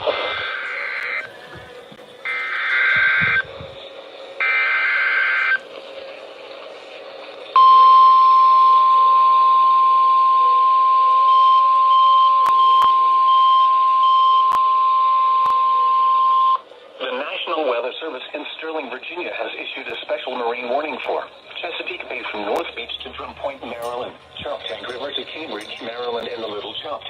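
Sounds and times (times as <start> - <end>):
buzzing data tones: 2.2 - 3.6.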